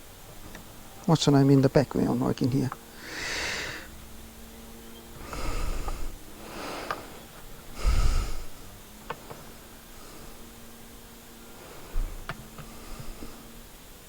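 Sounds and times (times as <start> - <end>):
faint steady hum: 0.0 - 14.0
person breathing out hard: 2.9 - 4.0, 5.2 - 8.8, 11.5 - 13.6.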